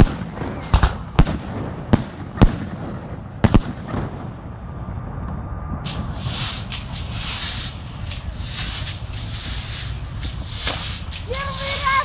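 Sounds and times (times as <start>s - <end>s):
low rumble: 2.7s - 11.9s
fireworks sizzling: 5.8s - 12.0s.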